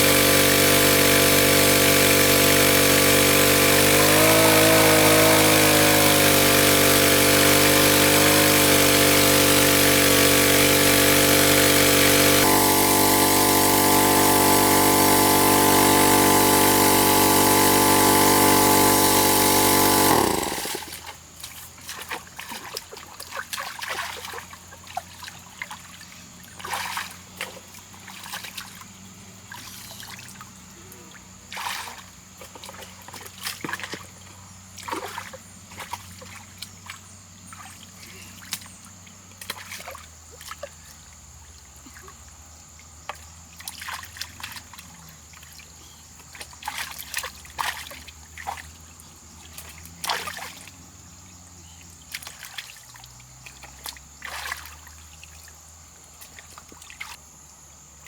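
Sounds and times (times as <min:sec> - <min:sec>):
water splashing and trickling: 0:20.5 - 0:51.1, 0:51.8 - 0:57.2.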